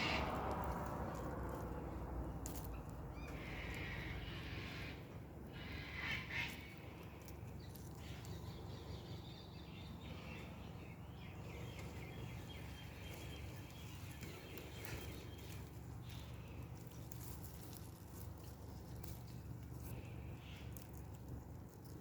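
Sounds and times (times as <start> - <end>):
distant cockatoos screeching: 0.0 - 0.6, 3.1 - 7.3
plants rustling and clicking: 0.0 - 9.3, 11.4 - 22.0.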